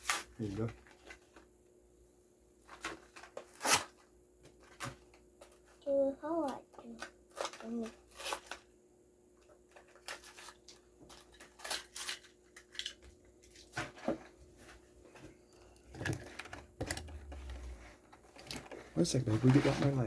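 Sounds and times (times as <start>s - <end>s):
plastic packaging crackling: 9.8s - 13.9s.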